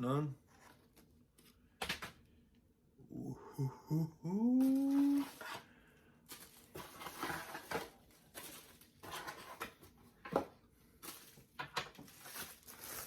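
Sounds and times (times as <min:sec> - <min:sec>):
packaging rustling: 0:06.3 - 0:10.0, 0:11.0 - 0:13.0.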